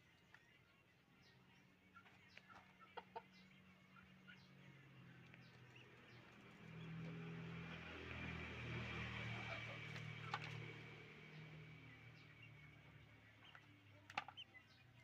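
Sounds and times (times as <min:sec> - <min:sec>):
chickens clucking: 0:01.6 - 0:06.8, 0:09.2 - 0:10.8, 0:12.2 - 0:15.0.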